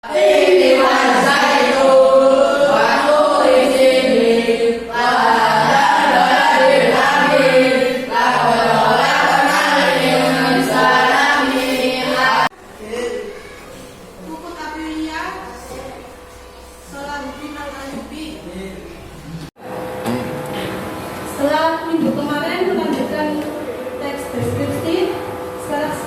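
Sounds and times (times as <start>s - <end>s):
group of voices singing: 0.0s - 12.5s.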